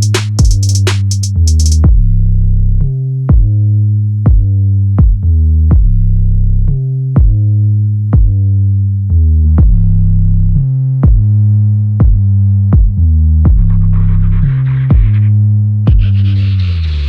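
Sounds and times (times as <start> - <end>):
electronic music with drum beat: 0.0 - 2.0, 12.8 - 16.4.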